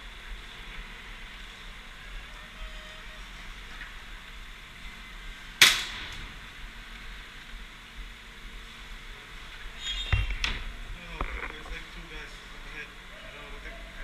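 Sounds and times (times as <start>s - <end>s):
airsoft gun shot: 5.6s - 6.2s.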